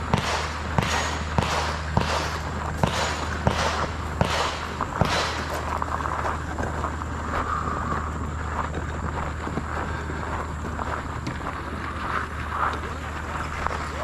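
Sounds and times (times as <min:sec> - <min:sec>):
pistol shot: 0:00.0 - 0:05.7
constant low hum: 0:00.0 - 0:14.0.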